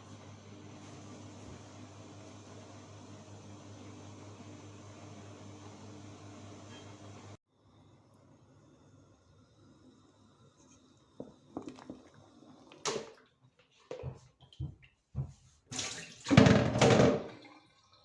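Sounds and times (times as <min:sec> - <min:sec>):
tap water running into sink: 0:11.1 - 0:18.0.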